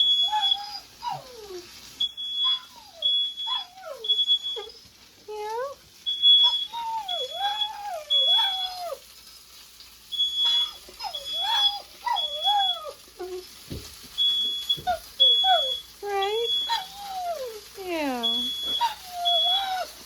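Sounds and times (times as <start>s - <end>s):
smoke alarm beeps: 0.0s - 0.8s, 2.0s - 4.9s, 6.0s - 9.5s, 10.1s - 12.9s, 14.1s - 17.0s, 18.0s - 19.8s
dog howling: 0.0s - 1.7s, 2.4s - 4.8s, 6.3s - 9.1s, 10.4s - 13.5s, 14.8s - 17.8s, 18.7s - 20.0s.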